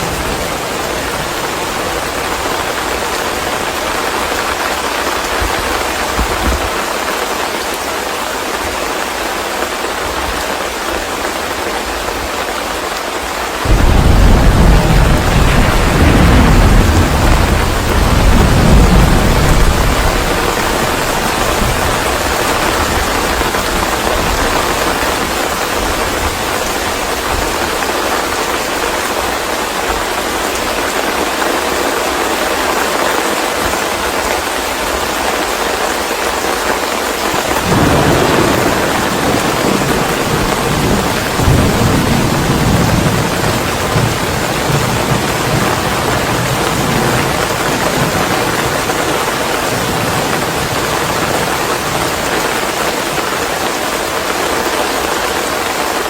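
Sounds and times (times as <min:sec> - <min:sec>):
thunder rumbling: 0:00.0 - 0:06.8, 0:13.6 - 0:28.4, 0:37.3 - 0:53.3
heavy rain: 0:00.0 - 0:56.0.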